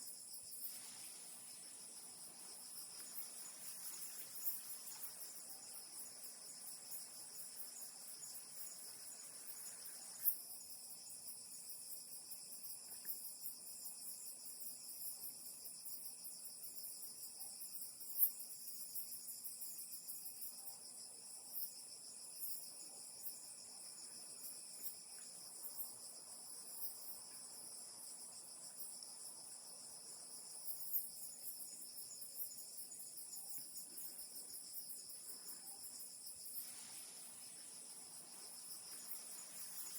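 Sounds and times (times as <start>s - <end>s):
insects trilling: 0.0s - 39.9s
faint ticks: 12.8s - 13.3s.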